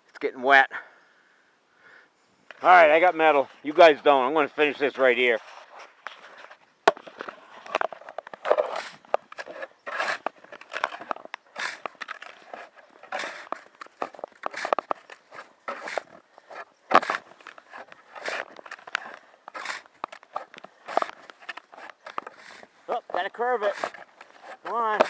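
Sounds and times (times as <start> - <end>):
shovel scraping wet snow: 8.4 - 25.0.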